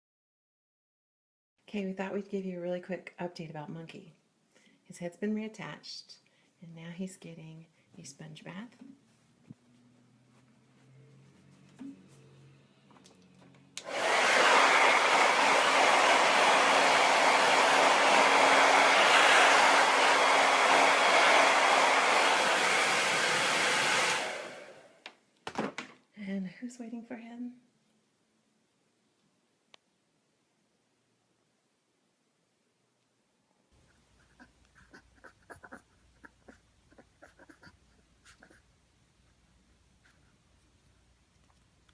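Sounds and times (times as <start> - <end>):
scuffing noises: 9.0 - 12.3
hair dryer blowing: 13.8 - 25.0
dog snorting: 33.8 - 38.7.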